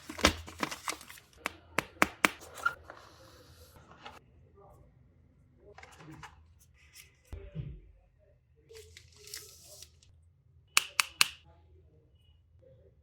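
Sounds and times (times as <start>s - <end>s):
sharp clicks: 10.8s - 11.4s.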